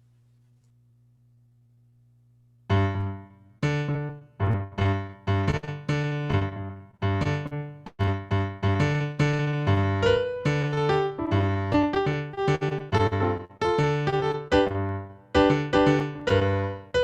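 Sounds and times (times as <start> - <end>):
faint low hum: 0.0 - 4.7
piano chords: 2.7 - 17.0.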